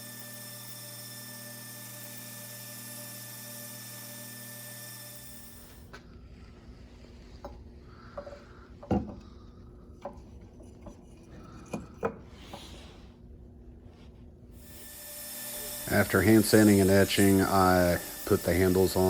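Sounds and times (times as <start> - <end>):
motor hum: 0.0 - 7.0, 14.5 - 19.0
knocks of objects on workbench: 8.2 - 9.2.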